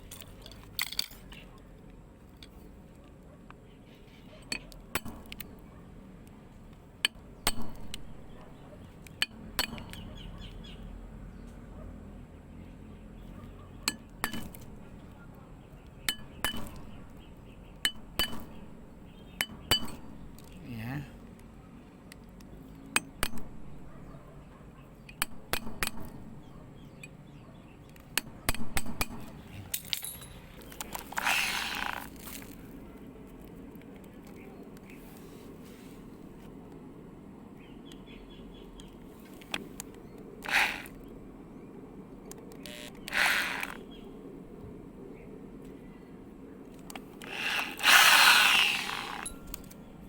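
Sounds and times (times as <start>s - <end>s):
metal tools clinking: 0.0s - 1.5s, 29.2s - 32.6s, 47.2s - 49.8s
metal scraping rasp: 31.0s - 32.5s, 40.4s - 41.0s, 43.0s - 43.8s, 47.2s - 49.4s.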